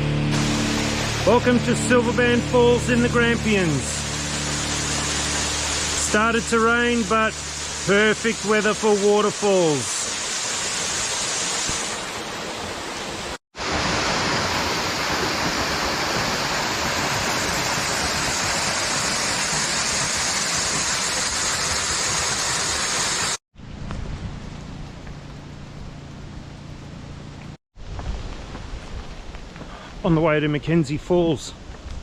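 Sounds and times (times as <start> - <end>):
waterfall rushing into pool: 0.3 - 23.4.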